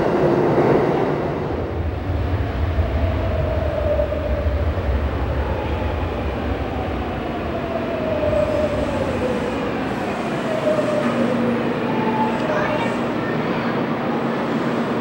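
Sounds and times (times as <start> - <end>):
electric train rumble: 0.0 - 15.0.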